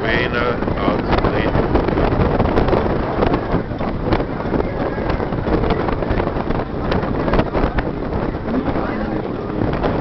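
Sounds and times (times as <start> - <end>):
boat engine running: 0.0 - 10.0
water noise: 0.0 - 10.0
wind buffeting microphone: 0.0 - 10.0.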